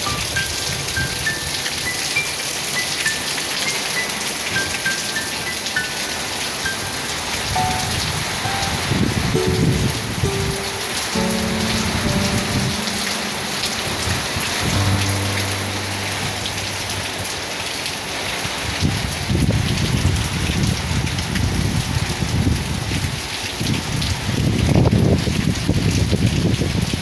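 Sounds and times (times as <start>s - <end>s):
heavy rain pouring: 0.0s - 27.0s
strong wind: 7.4s - 10.3s, 18.4s - 27.0s.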